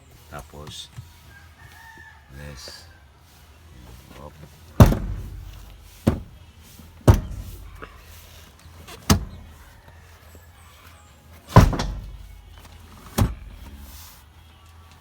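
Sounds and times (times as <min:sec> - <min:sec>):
sharp knocks: 0:04.8 - 0:06.4, 0:07.1 - 0:07.9, 0:09.1 - 0:09.5, 0:11.6 - 0:12.3.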